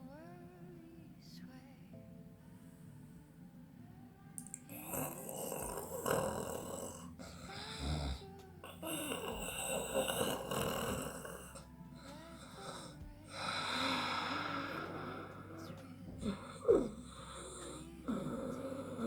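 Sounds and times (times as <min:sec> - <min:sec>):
woman snoring: 0:04.4 - 0:19.0.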